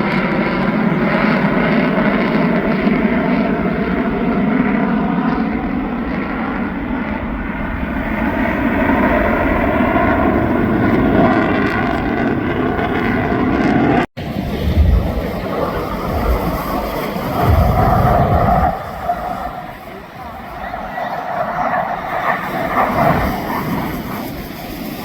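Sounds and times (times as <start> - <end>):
jet engines roaring in flight: 0.0 - 25.0.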